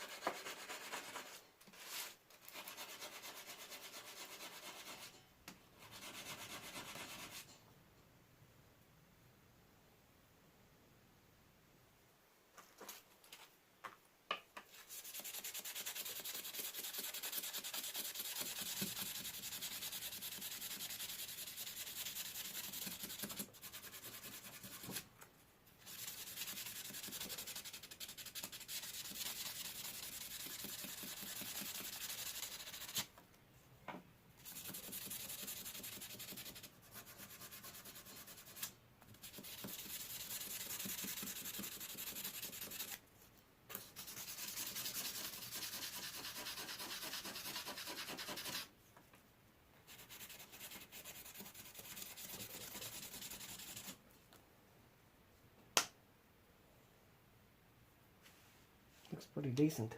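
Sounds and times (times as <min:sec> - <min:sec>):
sanding metal blade by hand: 0:14.9 - 0:25.0, 0:25.9 - 0:33.1, 0:34.4 - 0:43.0, 0:44.0 - 0:48.7.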